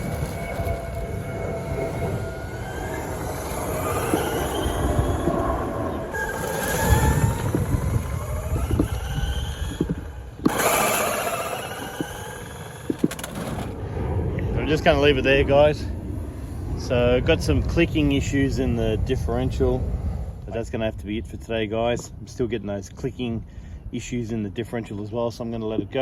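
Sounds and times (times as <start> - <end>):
electric motor whining: 0.0 - 13.8
tyre rumble on road: 0.0 - 13.8.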